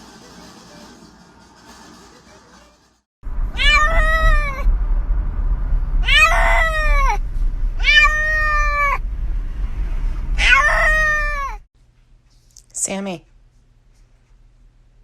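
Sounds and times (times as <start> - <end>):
cat meowing loudly: 3.5 - 4.7, 6.0 - 7.2, 7.8 - 9.0, 10.4 - 11.6.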